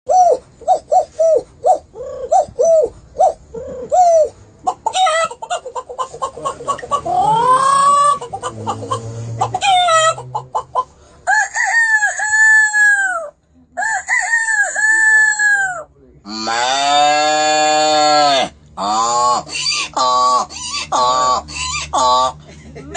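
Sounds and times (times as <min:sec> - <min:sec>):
chicken clucking: 0:02.2 - 0:15.7
rooster crowing: 0:11.2 - 0:15.7.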